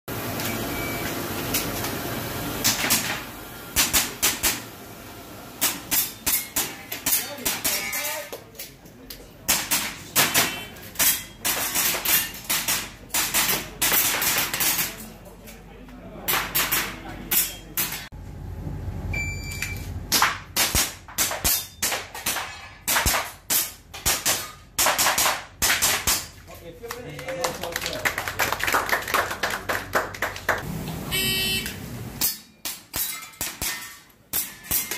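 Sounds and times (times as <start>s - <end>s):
murmur of room noise: 0.1s - 34.9s
shot timer beep: 19.1s - 19.8s, 31.1s - 31.7s.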